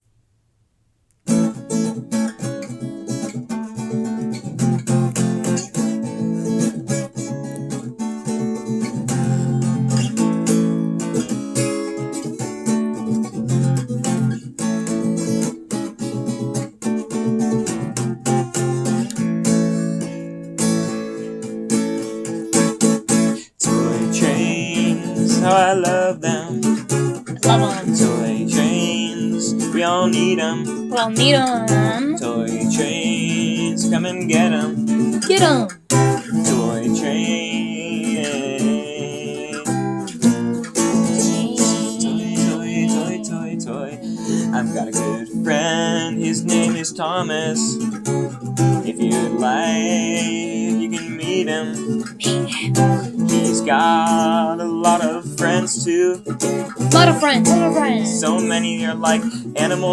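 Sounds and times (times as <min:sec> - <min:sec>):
acoustic guitar strumming: 0:01.3 - 0:59.9
person singing: 0:23.3 - 0:26.6, 0:27.4 - 0:39.7, 0:40.8 - 0:47.6, 0:48.9 - 0:55.9, 0:56.9 - 0:59.9.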